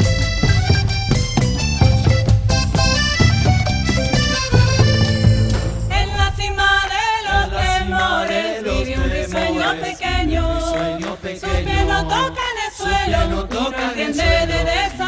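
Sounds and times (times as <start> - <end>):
instrumental backing music: 0.0 - 6.2.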